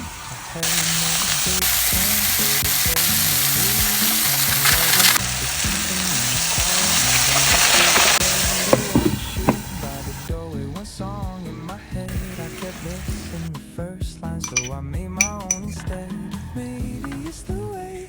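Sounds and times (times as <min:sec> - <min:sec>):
chicken sizzling in a pan: 0:00.0 - 0:13.6.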